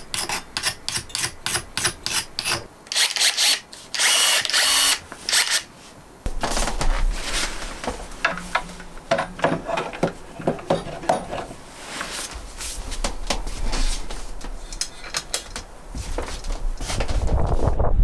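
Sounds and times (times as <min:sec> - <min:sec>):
low rumble: 0:16.7 - 0:18.0.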